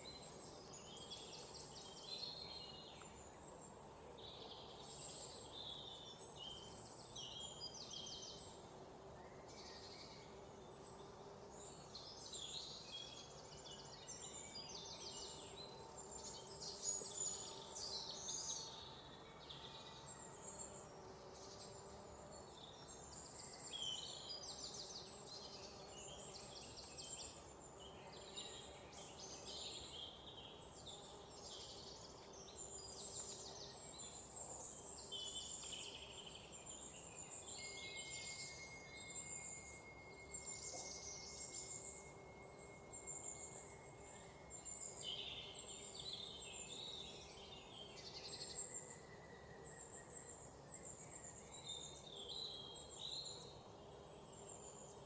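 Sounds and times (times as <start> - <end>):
songbirds chirping and trilling: 0.0 - 55.0
thin steady high tone: 35.3 - 47.5.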